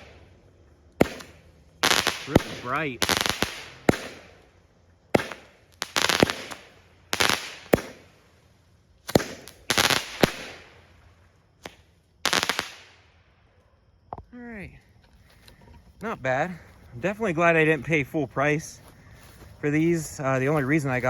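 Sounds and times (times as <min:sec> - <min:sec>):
firework shots with crackle: 0:00.0 - 0:00.3, 0:00.9 - 0:08.4, 0:09.0 - 0:13.2.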